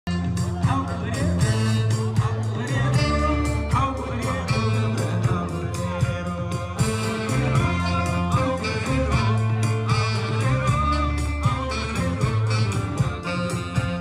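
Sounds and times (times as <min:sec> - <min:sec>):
held bass notes: 0:00.1 - 0:14.0
music with steady beat: 0:00.1 - 0:14.0
plucked guitar: 0:00.1 - 0:14.0.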